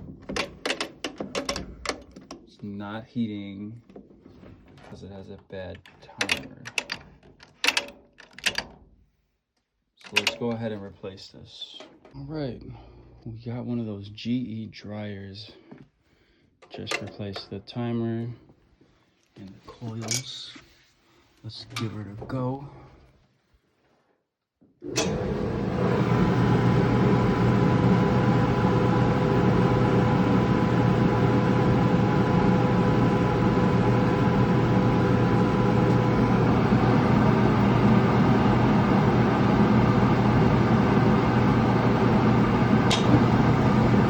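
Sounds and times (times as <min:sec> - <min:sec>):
dryer motor and drum humming: 0:24.8 - 0:44.0
dryer switch click: 0:42.8 - 0:43.4.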